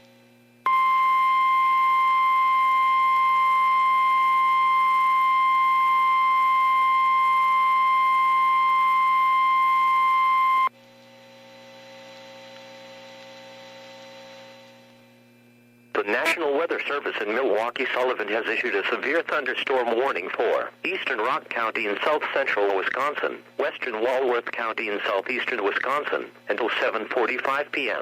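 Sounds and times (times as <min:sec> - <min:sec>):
steady alarm tone: 0:00.7 - 0:10.7
faint radio hiss and hum: 0:12.0 - 0:28.0.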